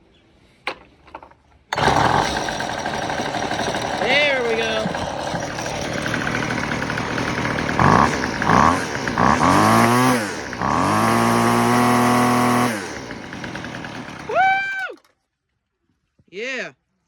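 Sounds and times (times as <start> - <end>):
string trimmer engine revving: 1.7 - 14.8.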